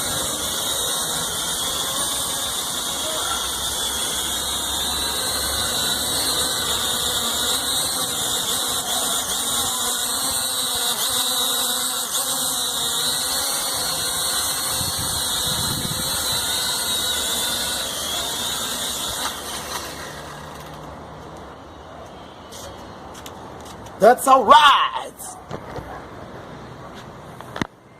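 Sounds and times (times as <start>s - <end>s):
small electric motor whine: 0.0s - 21.0s.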